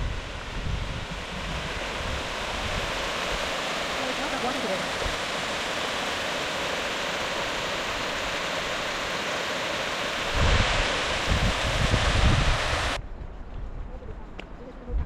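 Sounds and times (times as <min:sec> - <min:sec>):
wind buffeting microphone: 0:00.0 - 0:03.6, 0:10.2 - 0:15.0
running water rushing: 0:00.0 - 0:13.0.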